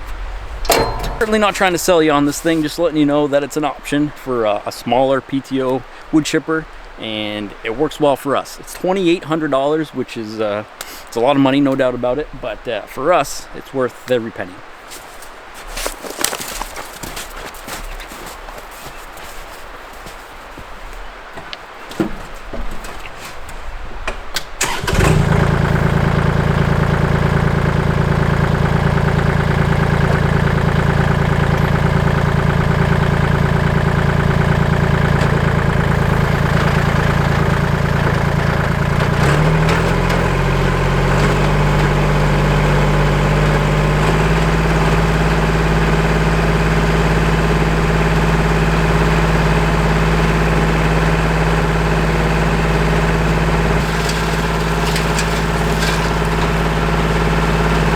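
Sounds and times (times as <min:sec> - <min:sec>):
tractor diesel engine running: 0:00.0 - 0:08.2, 0:24.4 - 0:57.9.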